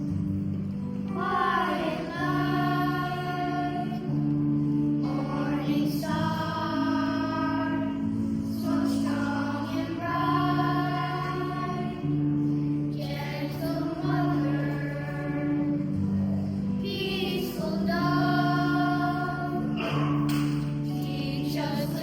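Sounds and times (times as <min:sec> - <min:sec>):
children's choir singing a hymn: 0:00.0 - 0:22.0
sustained low accompaniment: 0:00.0 - 0:22.0.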